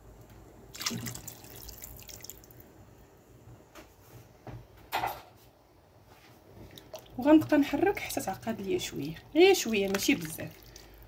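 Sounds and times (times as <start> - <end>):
liquid splashing into pot: 0.7 - 2.6, 9.6 - 11.0.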